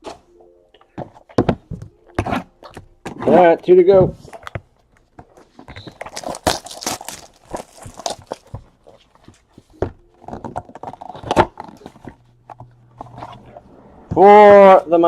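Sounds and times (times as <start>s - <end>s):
cards rustling: 0.8s - 14.3s
packaging crinkling and tearing: 5.4s - 9.1s.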